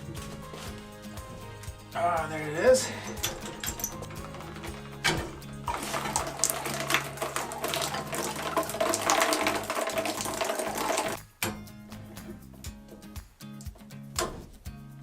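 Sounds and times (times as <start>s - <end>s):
water pouring and splashing from pipe: 2.6s - 11.4s.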